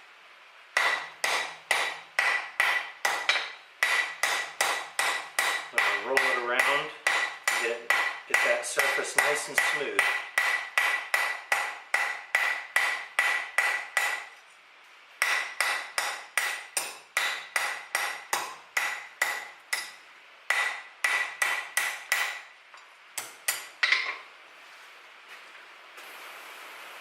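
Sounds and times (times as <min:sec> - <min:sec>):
hammer ringing on hot steel: 0:00.8 - 0:14.3, 0:15.2 - 0:22.4.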